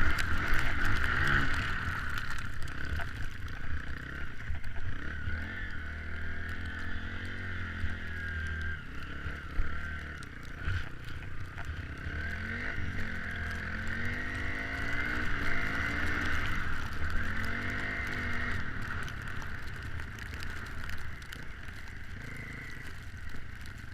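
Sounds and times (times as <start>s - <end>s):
off-road vehicle engine revving: 3.9s - 19.4s.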